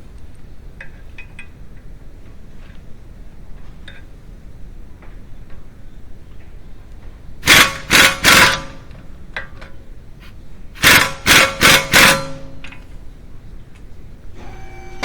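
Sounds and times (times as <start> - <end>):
impact wrench rattling: 7.4 - 8.8, 10.8 - 12.8.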